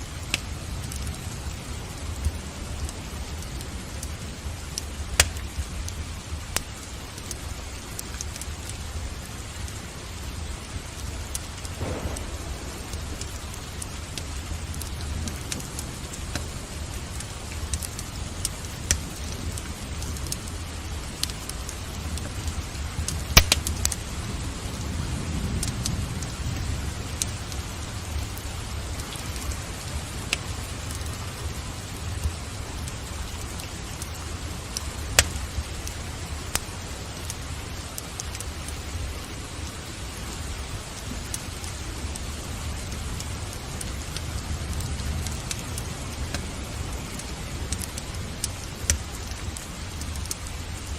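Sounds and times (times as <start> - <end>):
rain hiss: 0.0 - 50.9
wood fire crackling: 0.0 - 50.9.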